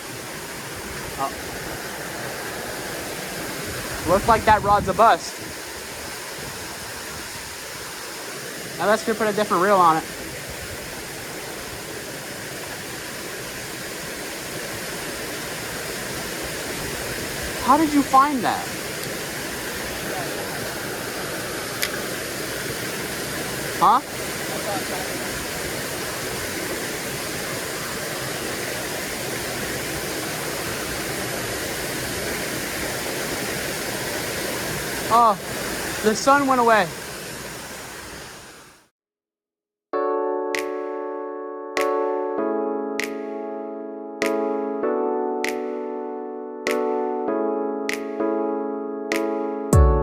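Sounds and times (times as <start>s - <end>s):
water rushing over a spillway: 0.0s - 38.8s.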